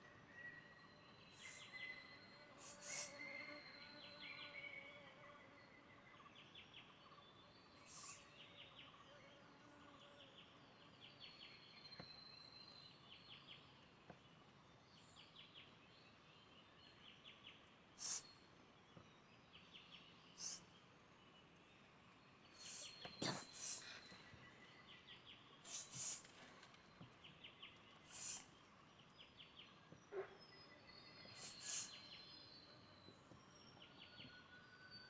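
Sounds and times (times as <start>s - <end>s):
high hisses: 2.6s - 3.1s, 7.8s - 8.2s, 18.0s - 18.3s, 20.4s - 20.7s, 22.6s - 24.0s, 25.6s - 26.4s, 28.0s - 28.5s, 31.3s - 32.0s.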